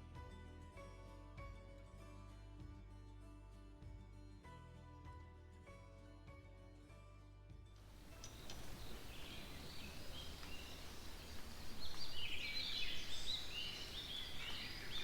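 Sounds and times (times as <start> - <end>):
low outdoor rumble: 7.8 - 15.0
small birds chirping: 7.9 - 15.0.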